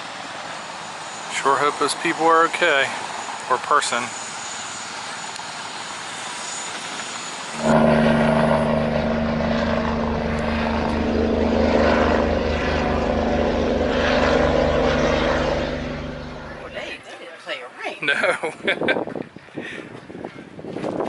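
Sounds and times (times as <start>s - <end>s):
helicopter engine and rotor: 2.6s - 17.0s.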